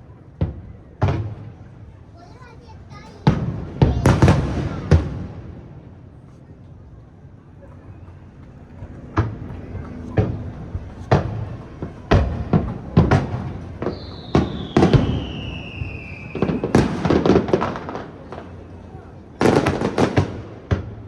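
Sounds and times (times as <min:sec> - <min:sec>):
firework bangs and crackles: 0:00.0 - 0:06.2, 0:07.9 - 0:21.0
firework shells booming: 0:03.2 - 0:05.7, 0:09.1 - 0:21.0
falling firework whistle: 0:12.2 - 0:18.1.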